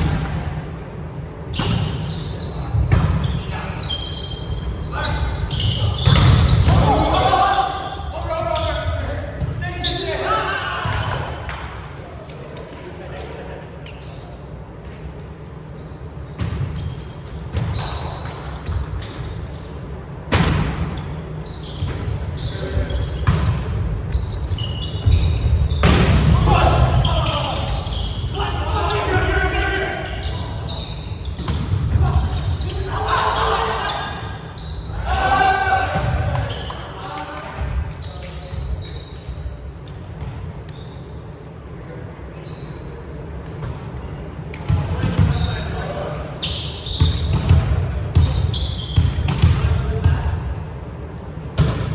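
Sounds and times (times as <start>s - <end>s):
sneakers squeaking on court floor: 1.4s - 11.6s, 13.8s - 50.3s, 51.5s - 51.9s.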